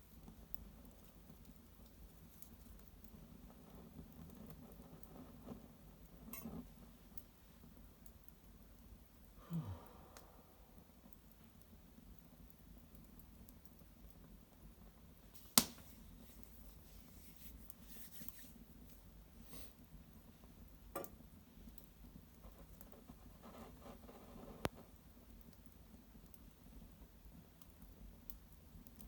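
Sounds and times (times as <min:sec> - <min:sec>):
fire crackling: 0:00.0 - 0:29.0
sharp pops from burning wood: 0:11.1 - 0:16.6, 0:20.9 - 0:29.0.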